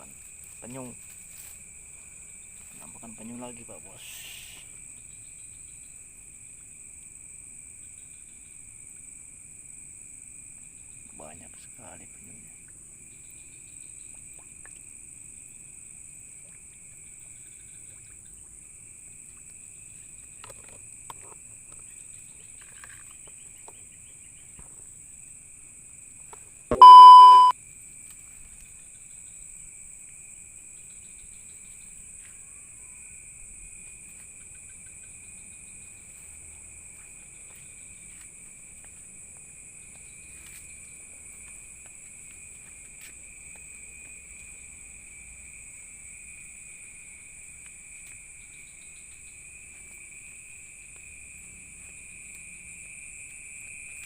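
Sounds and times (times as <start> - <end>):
crickets chirring: 0.0 - 54.0
loud electronic beep: 26.7 - 27.5.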